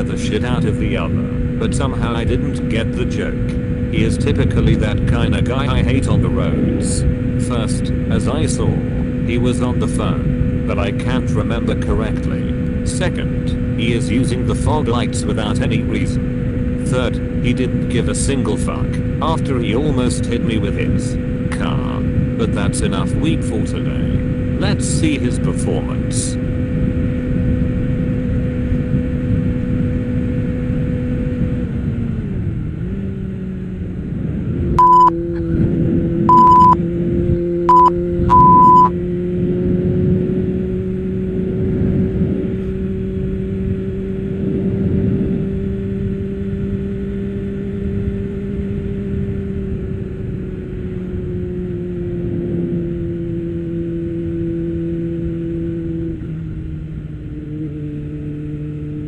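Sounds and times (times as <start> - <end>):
wind rumble: 0.0 - 24.6, 25.8 - 59.0
motorcycle engine running: 0.0 - 59.0
short high bleeps: 34.8 - 35.1, 36.3 - 36.8, 37.7 - 38.9.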